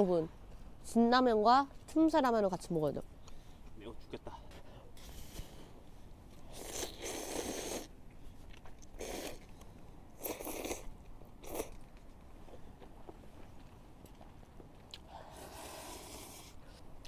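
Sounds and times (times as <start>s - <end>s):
person slurping and chewing noodles: 6.5s - 7.9s, 8.8s - 9.6s, 10.2s - 11.8s.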